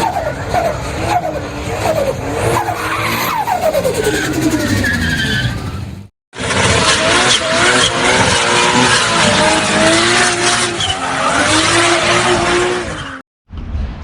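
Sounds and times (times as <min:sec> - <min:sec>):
car engine revving: 0:06.4 - 0:13.2.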